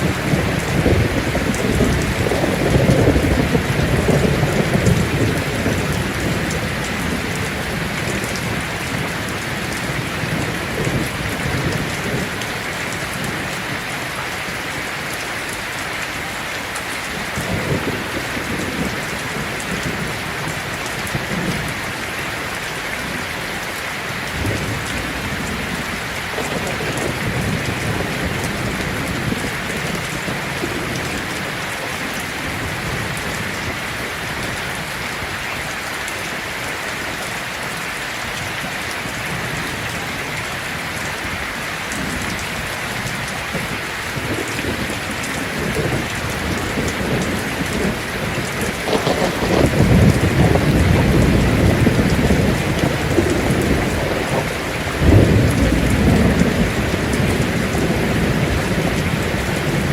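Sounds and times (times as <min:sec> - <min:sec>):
thunder rolling: 0:00.0 - 0:13.6, 0:24.2 - 0:33.8, 0:43.5 - 0:59.9
heavy rain on a tin roof: 0:00.0 - 0:59.9.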